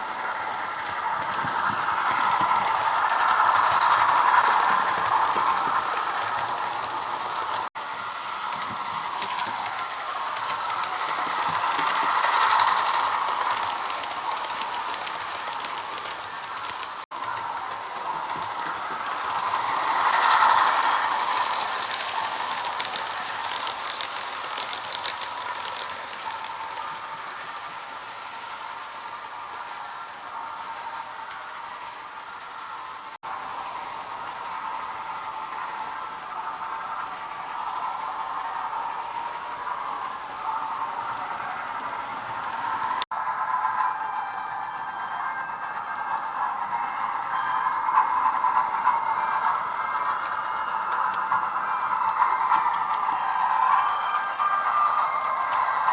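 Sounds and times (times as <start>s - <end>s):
model train running gear clicking: 0.0s - 55.9s
steam engine sounds from small speaker: 0.0s - 55.9s.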